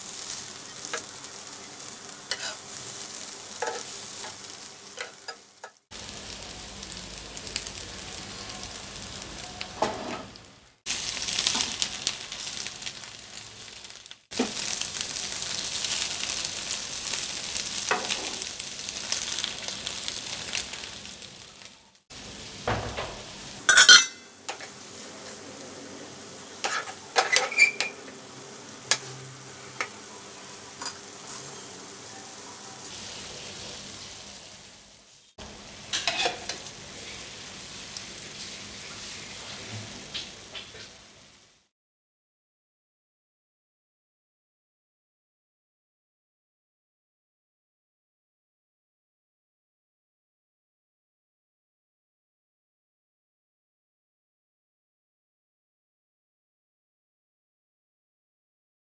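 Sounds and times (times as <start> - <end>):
egg sizzling in frying pan: 0.0 - 41.7
spatula scraping and tapping pan: 2.3 - 5.8, 22.9 - 24.8, 26.6 - 28.2, 28.8 - 30.0, 30.8 - 31.7, 35.9 - 36.7.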